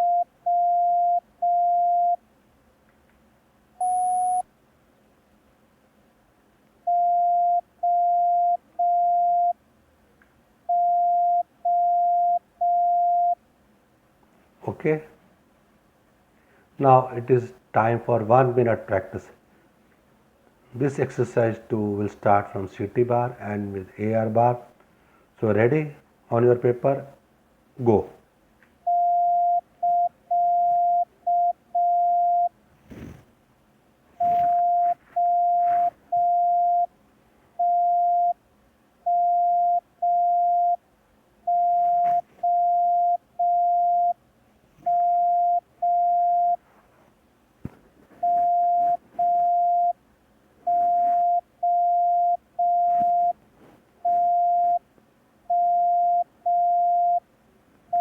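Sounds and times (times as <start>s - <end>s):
morse code beeps: 3.8s - 4.4s, 10.7s - 13.4s, 28.9s - 32.5s, 34.2s - 36.9s, 41.5s - 44.2s, 44.9s - 46.6s, 48.2s - 50.0s, 50.7s - 53.4s, 54.0s - 54.8s, 55.5s - 57.2s.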